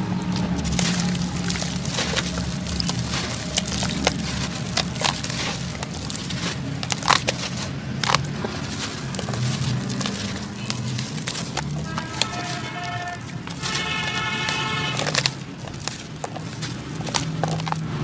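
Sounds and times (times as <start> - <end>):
dry cement clumps crunching: 0.0 - 18.0.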